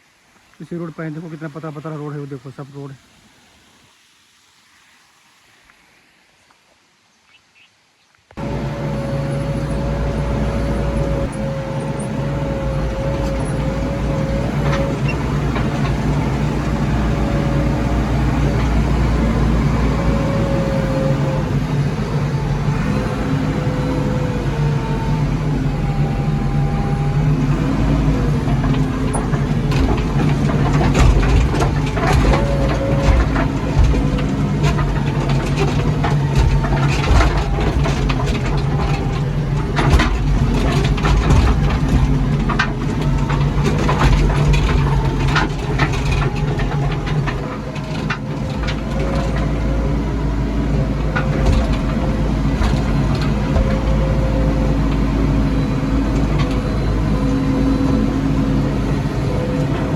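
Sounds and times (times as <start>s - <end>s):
rattles and knocks: 8.4s - 24.3s, 27.2s - 55.1s
diesel engine running: 8.4s - 59.9s.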